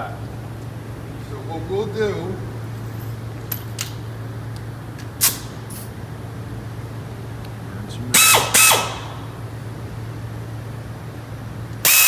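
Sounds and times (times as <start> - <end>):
steady low hum: 0.0 - 12.0
short hiss: 5.2 - 5.8
power tool spinning up: 8.2 - 9.2.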